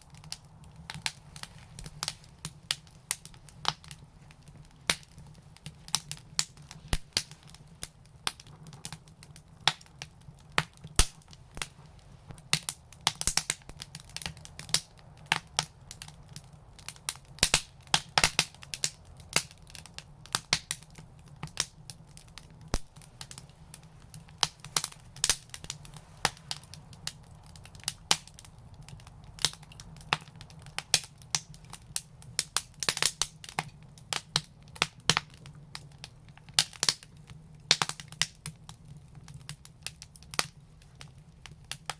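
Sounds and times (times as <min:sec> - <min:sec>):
wood fire crackling: 0:00.0 - 0:41.9.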